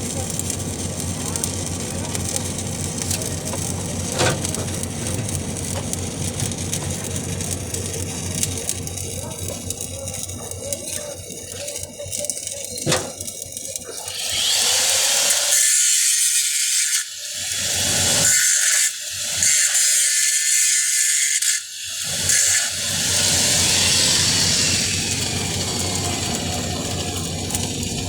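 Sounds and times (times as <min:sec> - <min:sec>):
welding arc hissing: 0:00.0 - 0:15.8, 0:21.9 - 0:28.0.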